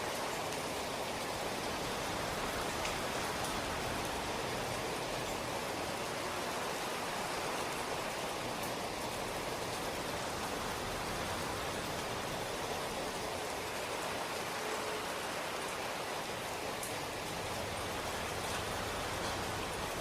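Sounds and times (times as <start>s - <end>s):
rain hiss: 0.0s - 20.0s
raindrops ticking: 0.1s - 6.5s, 16.8s - 20.0s.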